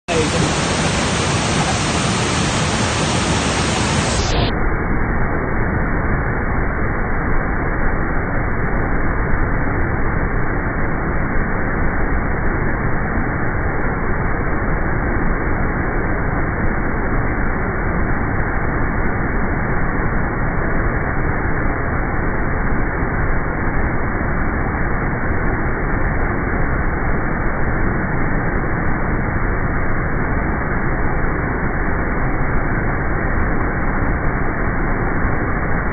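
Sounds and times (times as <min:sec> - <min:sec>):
rushing floodwater: 0:00.1 - 0:04.3.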